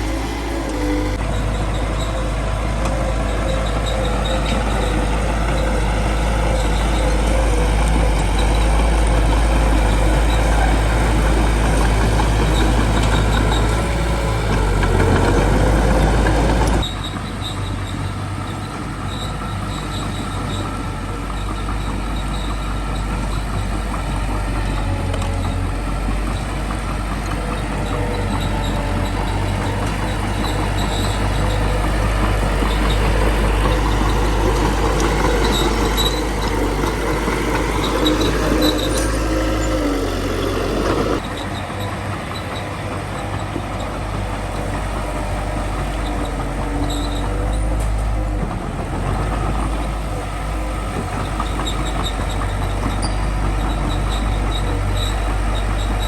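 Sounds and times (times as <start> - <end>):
bulldozer diesel engine running: 0.0 - 56.0.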